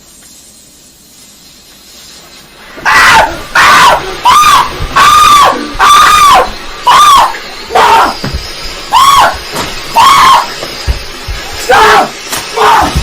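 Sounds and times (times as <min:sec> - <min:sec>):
man screaming in panic: 0:02.9 - 0:08.2, 0:11.7 - 0:13.0.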